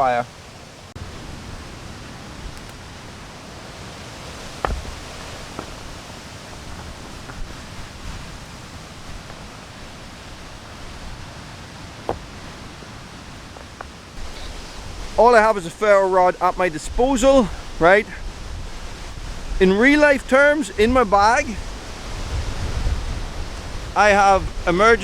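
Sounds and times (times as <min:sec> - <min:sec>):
wind noise on microphone: 0:00.0 - 0:25.0
rustling: 0:00.9 - 0:15.5
sharp knocks: 0:04.6 - 0:05.8.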